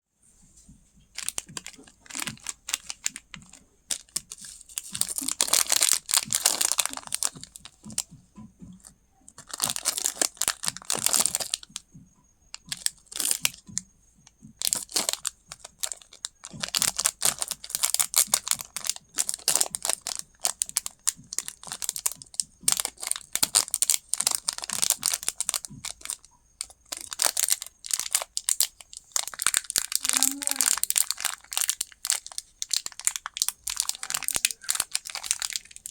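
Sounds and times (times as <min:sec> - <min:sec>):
plastic wrappers crinkling and tearing: 0:01.1 - 0:11.8, 0:12.5 - 0:13.8, 0:14.4 - 0:35.9.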